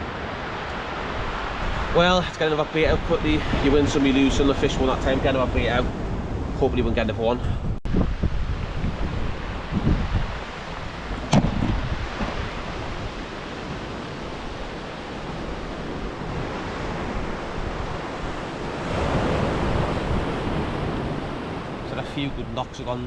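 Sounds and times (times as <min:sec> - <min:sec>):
wind buffeting microphone: 0:01.0 - 0:22.7
waves breaking on rocks: 0:09.3 - 0:22.8
sharp knock: 0:11.3 - 0:11.8.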